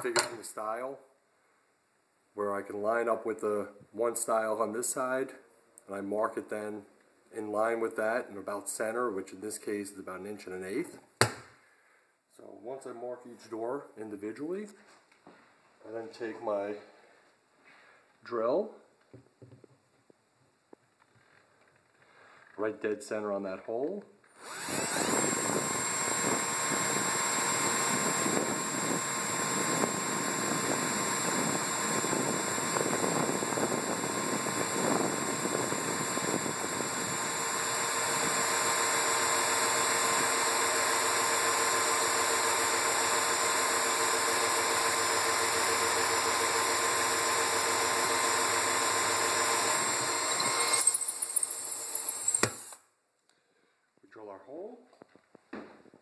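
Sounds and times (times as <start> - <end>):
power drill boring holes: 24.4 - 52.8.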